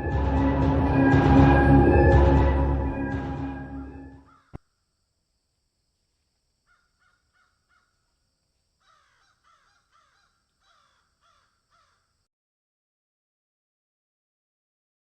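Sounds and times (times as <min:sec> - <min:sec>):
faint bird calling: 0:04.3 - 0:04.6, 0:06.6 - 0:08.2, 0:08.8 - 0:12.2.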